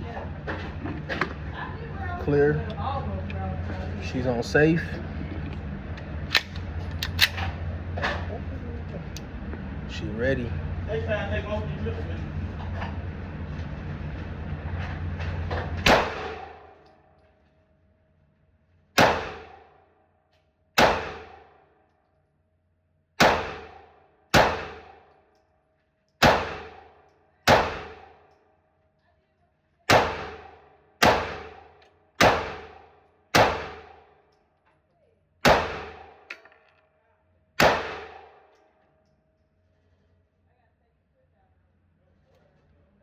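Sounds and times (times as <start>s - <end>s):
pistol shots echoing: 15.9s - 16.7s, 19.0s - 19.6s, 20.8s - 21.5s, 23.2s - 25.0s, 26.2s - 26.9s, 27.5s - 28.2s, 29.9s - 34.0s, 35.4s - 36.5s, 37.6s - 38.5s.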